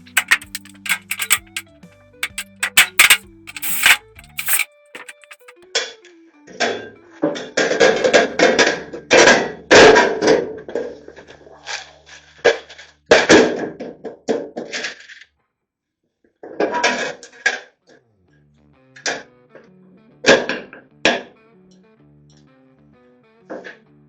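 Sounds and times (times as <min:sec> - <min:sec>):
metal clanks and rattles: 0:00.0 - 0:05.6.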